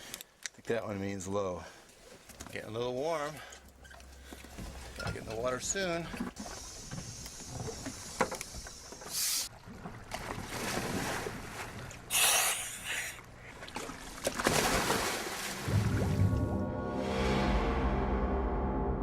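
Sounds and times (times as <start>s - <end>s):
water noise: 3.7s - 17.5s.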